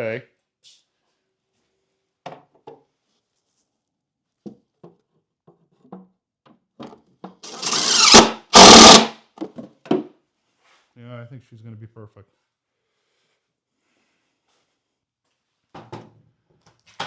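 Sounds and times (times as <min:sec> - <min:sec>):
loud noise: 0:07.5 - 0:09.2.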